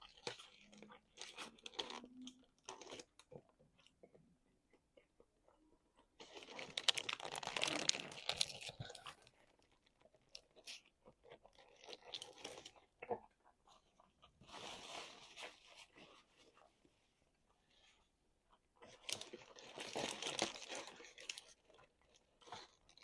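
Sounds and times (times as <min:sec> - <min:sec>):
crunching while eating: 0:00.0 - 0:04.2, 0:06.2 - 0:14.2, 0:18.8 - 0:23.0.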